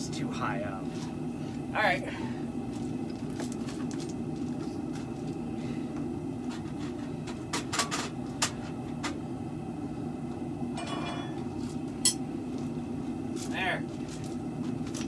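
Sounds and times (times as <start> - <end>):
steady low hum: 0.0 - 15.0
metallic ringing: 10.8 - 12.2.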